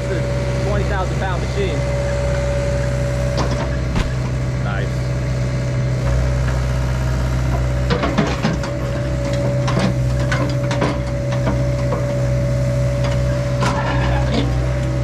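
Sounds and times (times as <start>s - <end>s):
excavator diesel engine whining: 0.0s - 15.0s
wood and roots cracking: 3.9s - 4.2s.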